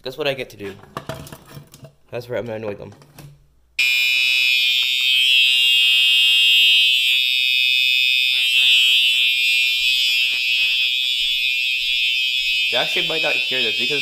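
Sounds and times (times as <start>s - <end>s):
fire alarm horn buzzing: 3.8s - 14.0s.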